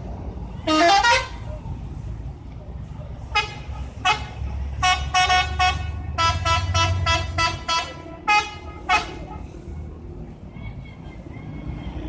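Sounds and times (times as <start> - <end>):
low engine rumble: 0.0 - 12.0
bus horn playing jingle: 0.7 - 1.3, 3.3 - 9.4.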